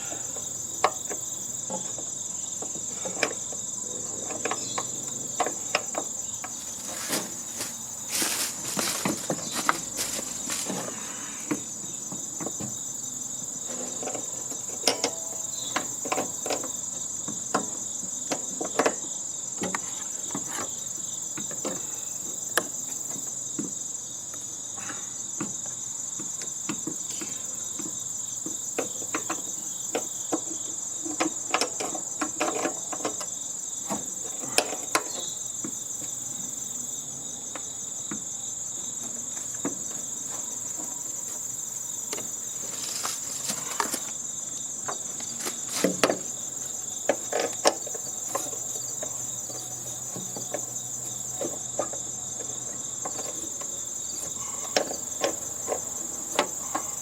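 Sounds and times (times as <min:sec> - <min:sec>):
high-pitched insect chorus: 0:00.0 - 0:57.0.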